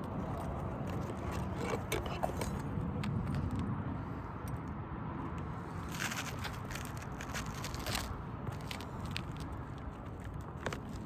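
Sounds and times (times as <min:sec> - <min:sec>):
low outdoor rumble: 0:00.0 - 0:11.0
roof shingles scraping and clicking: 0:05.9 - 0:11.0.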